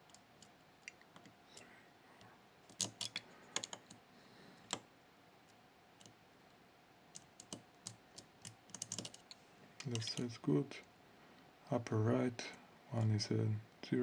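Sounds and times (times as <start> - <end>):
lock pick clicking against pins: 2.7 - 3.8.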